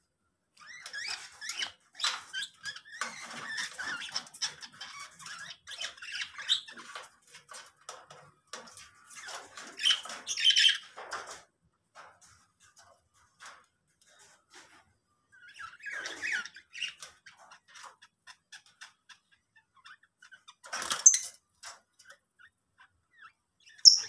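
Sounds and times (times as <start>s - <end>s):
lovebirds chattering and squawking: 0.6s - 11.3s, 15.3s - 24.0s.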